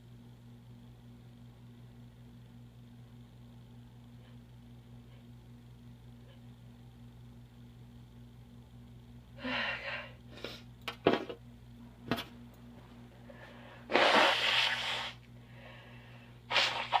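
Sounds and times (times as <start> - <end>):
nose blowing into tissue: 13.8 - 15.2, 16.5 - 17.0
person sniffing: 13.8 - 15.2, 16.5 - 17.0.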